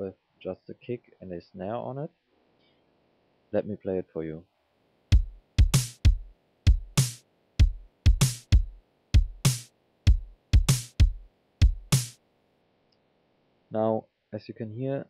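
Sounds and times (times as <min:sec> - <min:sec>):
drum machine kick and snare beat: 0:05.1 - 0:12.2.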